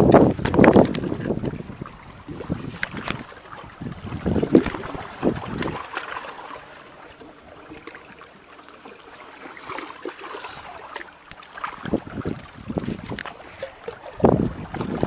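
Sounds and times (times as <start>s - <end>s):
water lapping and gurgling: 0.0s - 15.0s.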